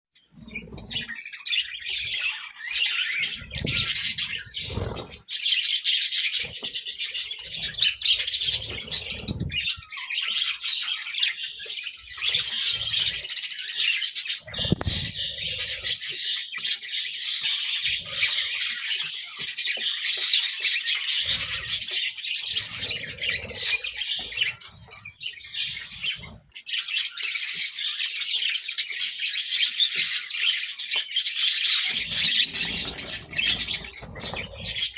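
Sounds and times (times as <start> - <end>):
budgerigars chirping and chattering: 0.2 - 34.9.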